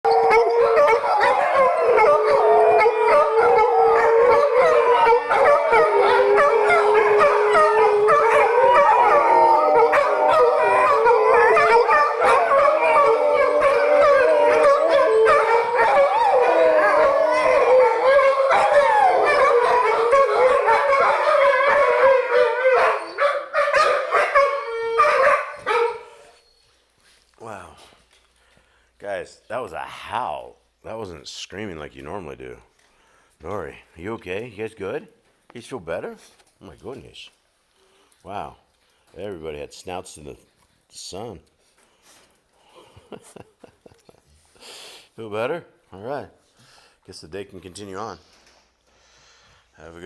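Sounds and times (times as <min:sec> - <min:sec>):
dogs howling in chorus: 0:00.0 - 0:26.4.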